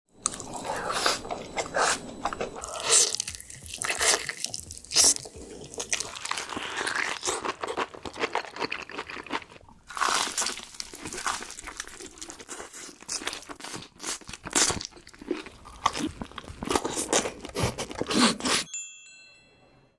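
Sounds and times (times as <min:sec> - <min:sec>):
chewing: 0:00.2 - 0:18.7
crunching bites of fried chicken: 0:02.6 - 0:18.6.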